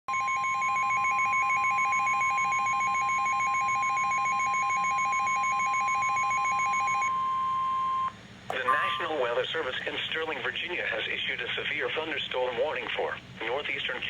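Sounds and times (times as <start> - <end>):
high-pitched warning alarm tone: 0.1 - 9.4.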